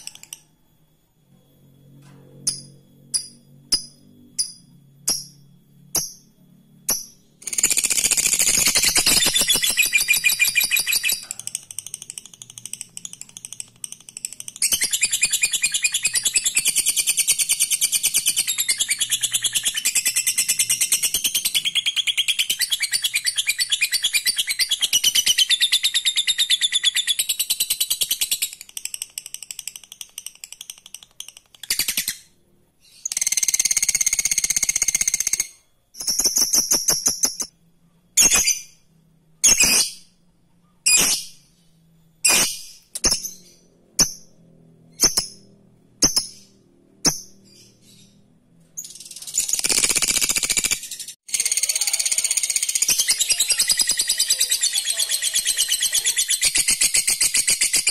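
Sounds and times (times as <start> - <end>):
lovebird rattling trill: 6.9 - 32.0.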